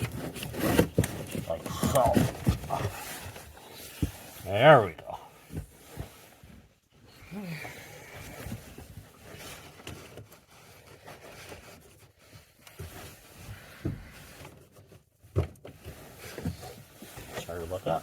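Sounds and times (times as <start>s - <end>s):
plastic rubbing and scraping: 0.0s - 6.9s, 8.1s - 18.0s.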